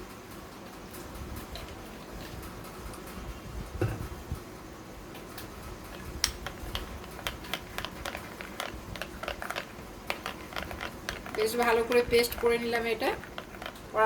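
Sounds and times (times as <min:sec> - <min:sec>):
mixing taps against bowl: 0:05.9 - 0:14.0.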